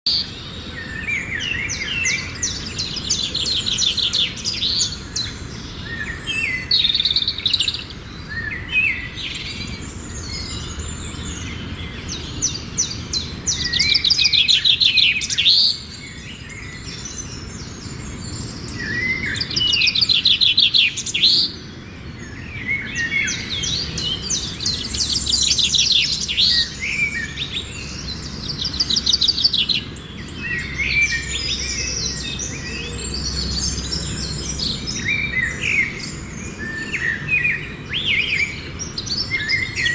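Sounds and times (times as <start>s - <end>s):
bird chirps: 0.1s - 39.9s.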